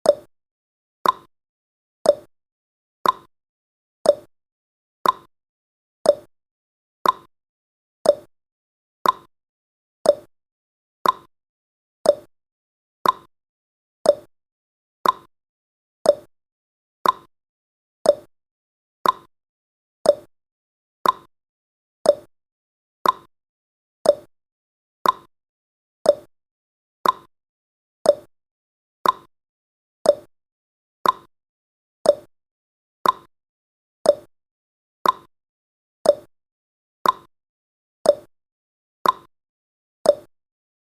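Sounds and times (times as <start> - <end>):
timer ticking: 0.0 - 0.3, 1.0 - 1.3, 2.0 - 2.3, 3.0 - 3.3, 4.0 - 4.3, 5.0 - 5.3, 6.0 - 6.3, 7.0 - 7.3, 8.0 - 8.3, 9.0 - 9.3, 10.0 - 10.3, 11.0 - 11.3, 12.0 - 12.3, 13.0 - 13.3, 14.0 - 14.3, 15.0 - 15.3, 16.0 - 16.3, 17.0 - 17.3, 18.0 - 18.3, 19.0 - 19.3, 20.0 - 20.3, 21.0 - 21.3, 22.0 - 22.3, 23.0 - 23.3, 24.0 - 24.3, 25.0 - 25.3, 26.0 - 26.3, 27.0 - 27.3, 28.0 - 28.3, 29.0 - 29.3, 30.0 - 30.3, 31.0 - 31.3, 32.0 - 32.3, 33.0 - 33.3, 34.0 - 34.3, 35.0 - 35.3, 36.0 - 36.3, 37.0 - 37.3, 38.0 - 38.3, 39.0 - 39.3, 40.1 - 40.3.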